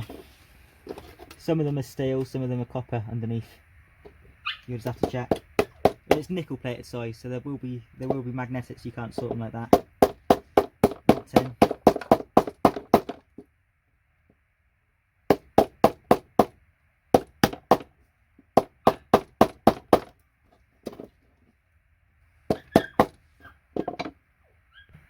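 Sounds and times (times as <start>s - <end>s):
hammer tapping metal scraper: 22.5s - 23.2s.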